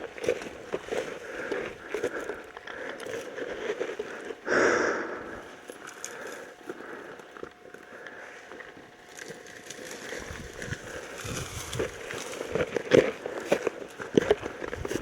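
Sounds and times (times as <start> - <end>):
footsteps crunching through dry leaves: 9.1 - 15.0.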